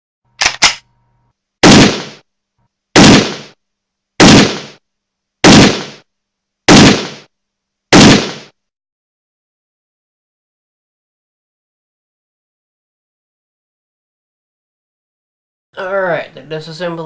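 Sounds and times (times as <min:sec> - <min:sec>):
loud gunshots: 0:01.6 - 0:02.2, 0:03.0 - 0:03.6, 0:04.2 - 0:04.8, 0:05.4 - 0:06.0, 0:06.7 - 0:07.3, 0:07.9 - 0:08.5.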